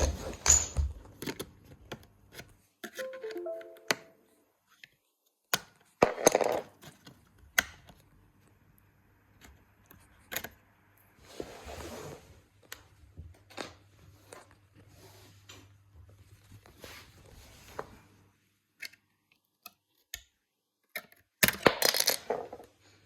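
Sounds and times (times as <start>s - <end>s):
rustling and scraping: 11.2s - 12.6s, 13.3s - 18.5s.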